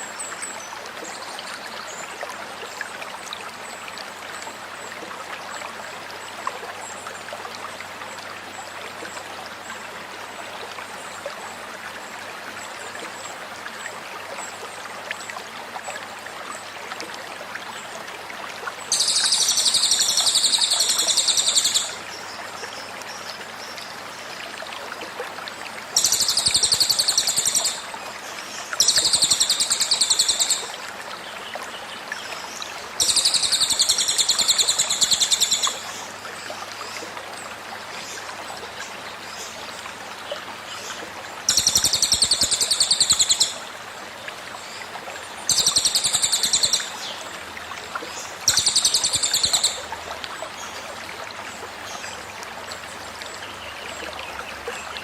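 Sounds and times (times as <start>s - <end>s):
stream water babbling: 0.0s - 55.0s
bird high-pitched trilling song: 48.5s - 49.8s.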